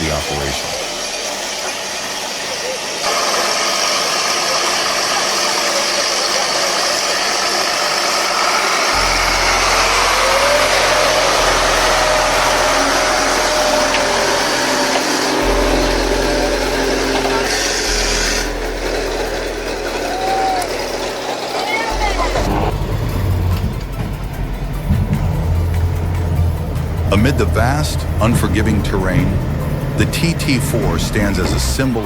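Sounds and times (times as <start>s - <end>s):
faint voices: 0.0s - 26.2s
heavy engine running: 0.0s - 32.0s
deep low rumble: 8.9s - 21.3s, 21.9s - 32.0s.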